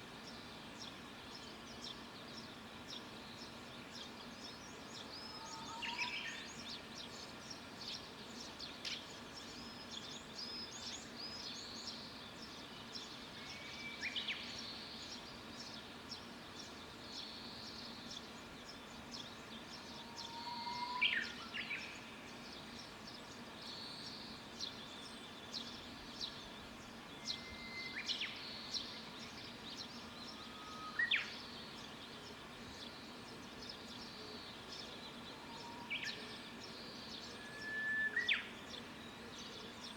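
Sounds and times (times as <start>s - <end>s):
songbirds chirping: 0.0s - 39.9s
whistled bird song: 20.0s - 22.0s, 27.2s - 31.4s, 35.4s - 39.9s.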